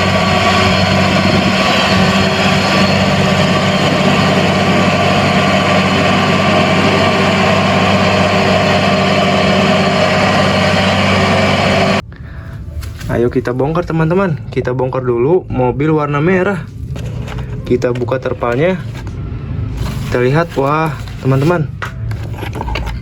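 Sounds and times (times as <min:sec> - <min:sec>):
truck engine idling: 0:00.0 - 0:12.1.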